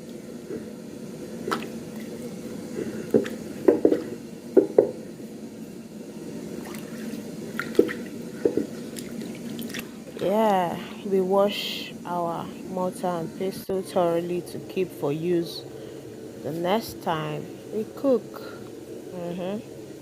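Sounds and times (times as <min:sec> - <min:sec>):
wet squelching and dripping: 0:06.6 - 0:10.0.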